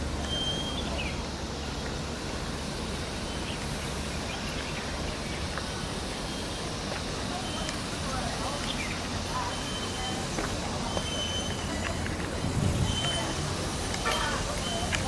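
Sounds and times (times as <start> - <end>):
low outdoor hum: 0.0 - 15.0.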